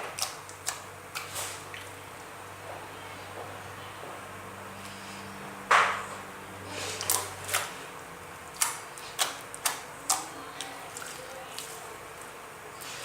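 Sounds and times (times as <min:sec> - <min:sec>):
slime squelching: 0:06.7 - 0:07.9, 0:08.5 - 0:13.0.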